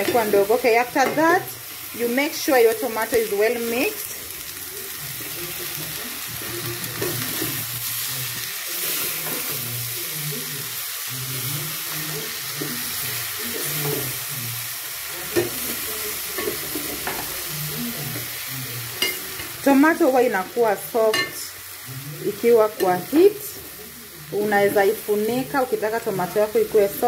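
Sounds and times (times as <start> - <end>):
oil sizzling in a pot: 0.0 - 27.0
spoon stirring and scraping: 5.2 - 9.7.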